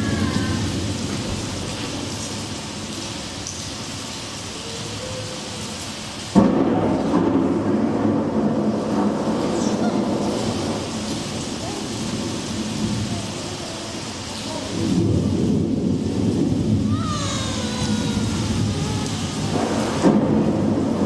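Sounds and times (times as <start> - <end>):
low rolling thunder: 0.0 - 4.4, 5.5 - 21.0
rain hissing: 0.0 - 21.0.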